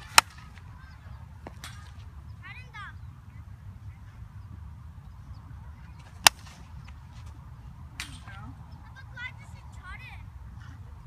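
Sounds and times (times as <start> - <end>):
bat cracking ball: 0.0 - 0.7, 1.4 - 2.0, 6.0 - 7.0.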